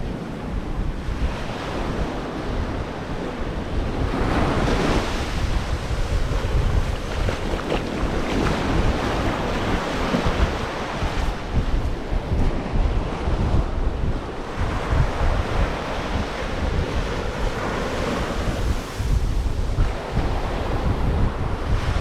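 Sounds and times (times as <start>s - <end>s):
ocean waves washing onto beach: 0.0s - 22.0s
wind buffeting microphone: 0.0s - 22.0s.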